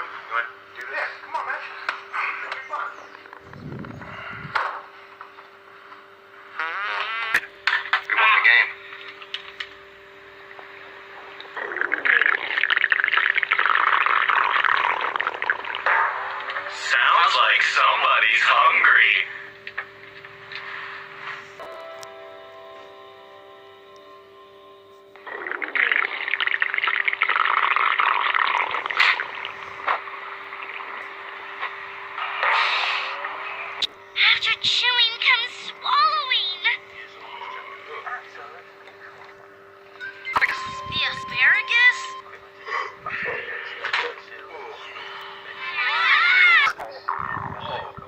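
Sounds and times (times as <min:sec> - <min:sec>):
stomach growling: 0:03.2 - 0:04.9, 0:11.2 - 0:16.8, 0:25.2 - 0:33.9, 0:44.6 - 0:48.0.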